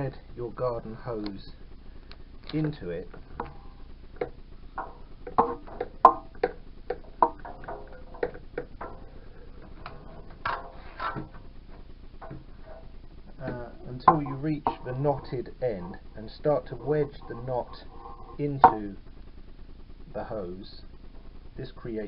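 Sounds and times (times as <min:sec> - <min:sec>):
plastic hoses clicking and scraping: 0:02.4 - 0:18.8.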